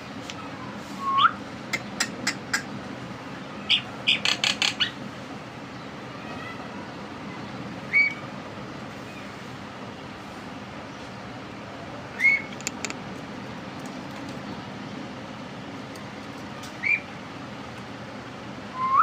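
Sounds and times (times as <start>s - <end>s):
bird whistled calls: 1.0s - 1.4s, 7.9s - 8.2s, 12.1s - 12.5s, 16.8s - 17.1s, 18.7s - 19.0s
sharp clicks: 12.5s - 13.0s.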